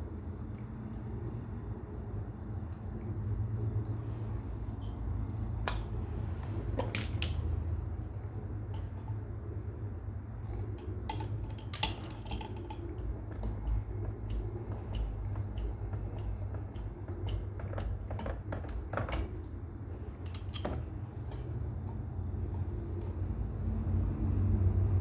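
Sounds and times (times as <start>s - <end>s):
steady low hum: 0.0s - 25.0s
light metallic clicks and clinks: 10.5s - 19.4s, 20.0s - 23.6s.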